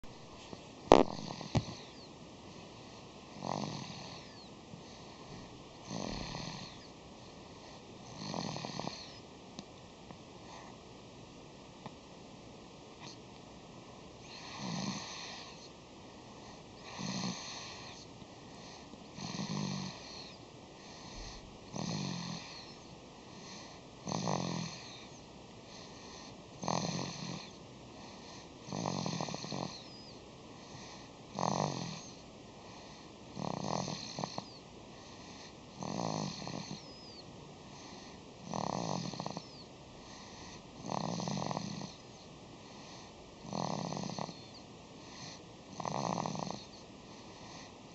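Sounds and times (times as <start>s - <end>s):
rasping snoring: 0.9s - 2.0s, 3.4s - 4.5s, 5.8s - 6.9s, 8.0s - 9.2s, 14.2s - 15.6s, 16.8s - 18.0s, 19.2s - 22.8s, 23.5s - 25.1s, 25.8s - 27.6s, 28.6s - 29.9s, 30.8s - 32.2s, 33.4s - 34.6s, 35.8s - 37.2s, 37.9s - 39.6s, 40.2s - 42.0s, 42.8s - 46.8s.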